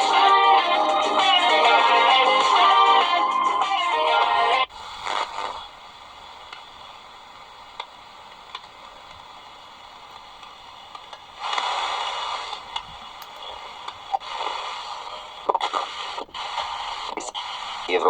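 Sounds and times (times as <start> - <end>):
noisy radio signal: 4.2 - 18.0
radio static hiss: 4.2 - 18.0.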